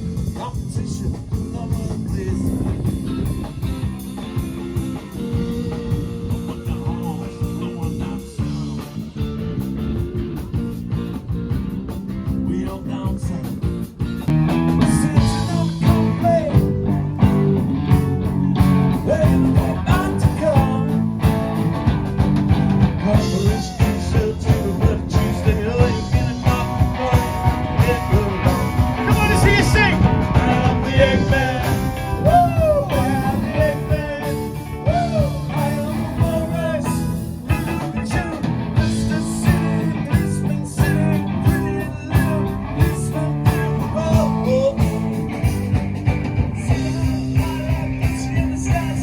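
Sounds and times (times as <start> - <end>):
live rock band playing: 0.0 - 49.0
person singing: 14.8 - 16.8, 18.3 - 21.1, 23.0 - 45.3, 46.6 - 49.0.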